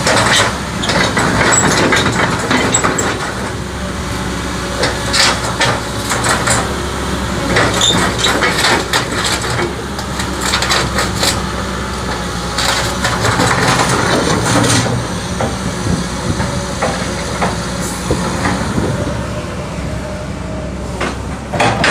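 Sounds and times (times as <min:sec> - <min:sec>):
excavator diesel engine running: 0:00.0 - 0:21.9
metallic clanks and knocks: 0:21.0 - 0:21.9.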